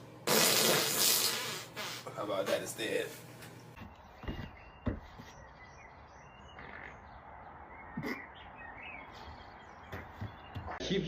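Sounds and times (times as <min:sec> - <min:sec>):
birds chirping faintly: 0:03.4 - 0:11.0.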